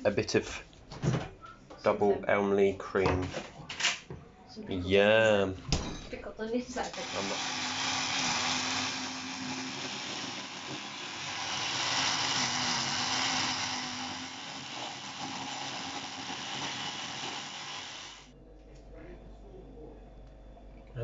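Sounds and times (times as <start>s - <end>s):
blender running: 6.8s - 18.3s.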